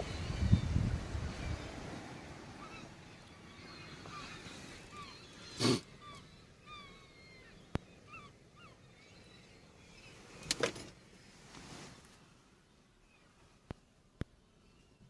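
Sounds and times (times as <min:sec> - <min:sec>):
seagulls calling: 0:01.3 - 0:10.9.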